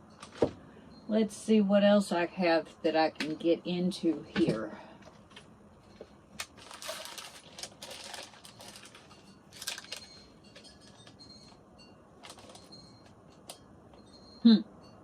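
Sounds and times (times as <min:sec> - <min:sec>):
small parts clicking and rattling: 0:05.3 - 0:11.6, 0:12.2 - 0:13.6
packaging crinkling: 0:06.3 - 0:11.6, 0:12.2 - 0:12.7.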